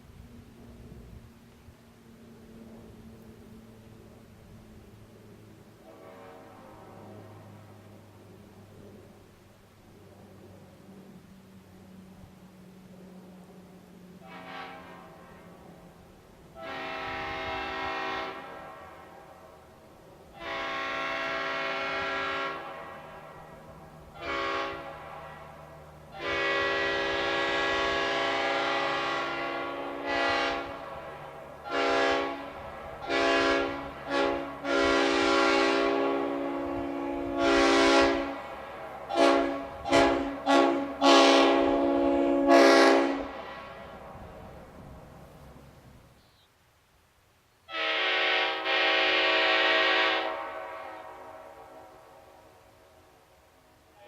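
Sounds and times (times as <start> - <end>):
locomotive air horn blasts: 5.8 - 7.6, 14.2 - 15.8, 16.6 - 19.7, 20.3 - 44.4, 47.7 - 52.4.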